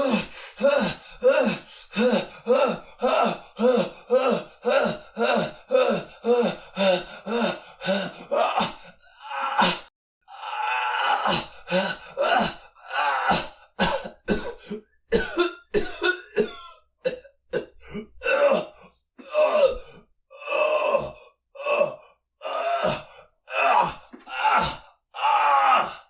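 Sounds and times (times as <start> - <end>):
man coughing: 13.8 - 18.0
man clearing his throat: 13.8 - 18.6.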